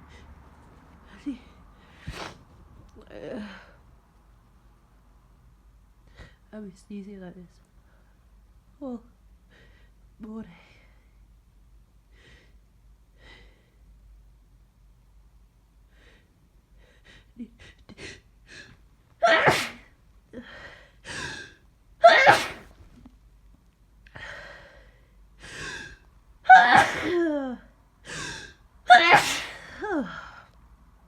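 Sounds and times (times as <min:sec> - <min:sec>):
person sneezing: 0:01.3 - 0:02.4, 0:19.2 - 0:19.9, 0:21.1 - 0:22.7, 0:25.5 - 0:27.3, 0:28.1 - 0:30.2.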